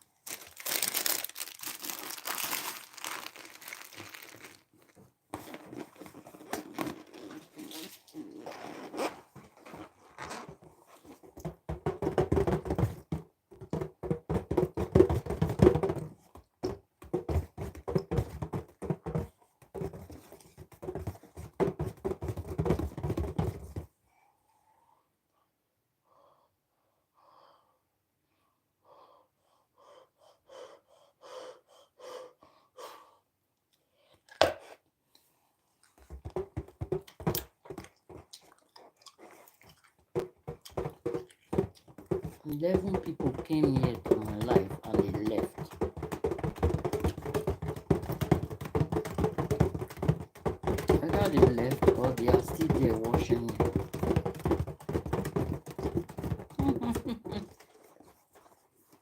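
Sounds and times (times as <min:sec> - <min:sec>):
gum chewing smacks: 0:37.1 - 0:42.0.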